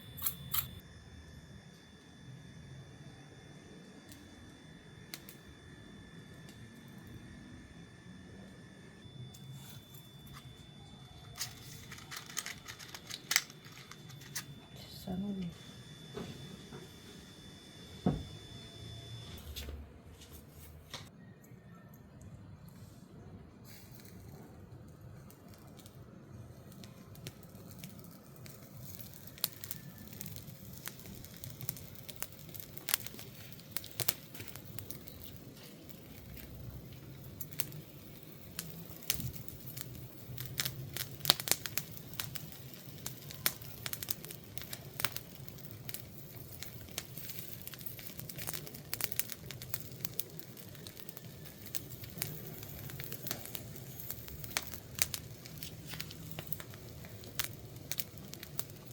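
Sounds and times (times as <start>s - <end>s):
wood fire crackling: 4.0s - 7.6s, 9.1s - 15.2s, 23.7s - 58.9s.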